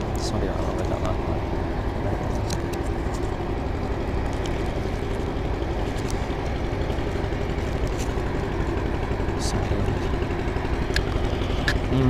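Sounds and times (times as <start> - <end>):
motor running with low rumble: 0.0 - 12.0.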